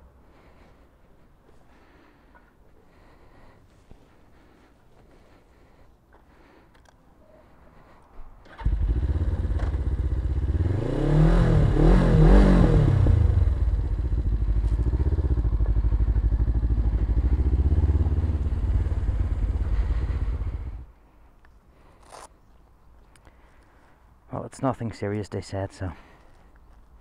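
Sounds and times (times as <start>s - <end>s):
motorcycle engine starting and idling: 8.4s - 20.9s
motorcycle engine revving: 8.5s - 20.9s.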